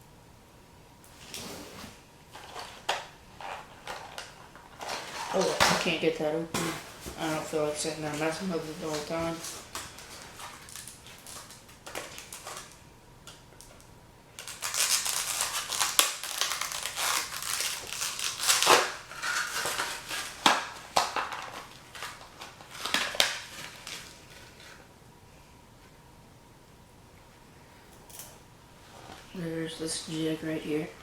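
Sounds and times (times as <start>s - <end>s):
plastic packaging crinkling: 2.3s - 12.8s, 13.6s - 24.8s.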